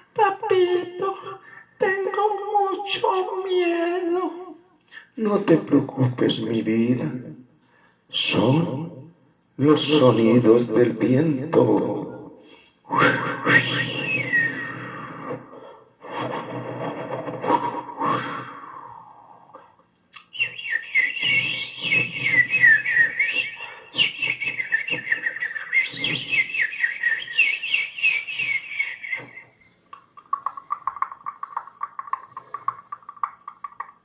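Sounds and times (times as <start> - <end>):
warbling trilling whistles: 13.4 - 15.3, 20.3 - 33.9.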